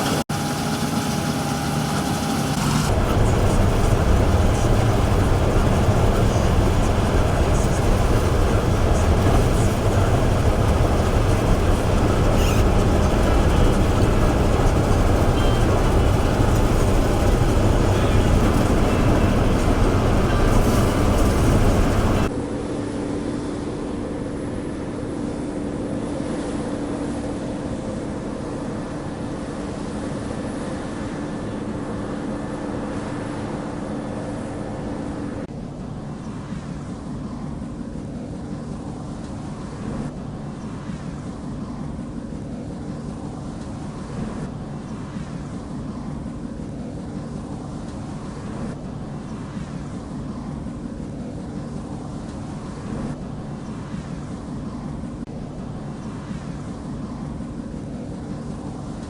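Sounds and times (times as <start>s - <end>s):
combine harvester rumble: 0.0s - 22.3s
quiet engine hum: 0.0s - 22.3s.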